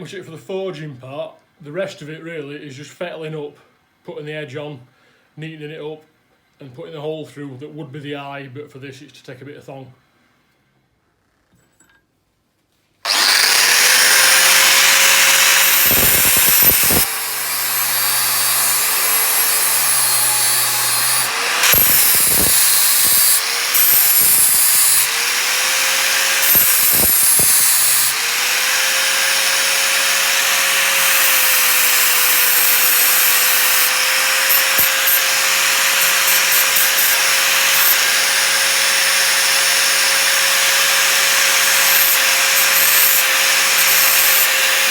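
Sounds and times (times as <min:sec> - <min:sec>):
electric grinder grinding steel: 0:13.1 - 0:44.9.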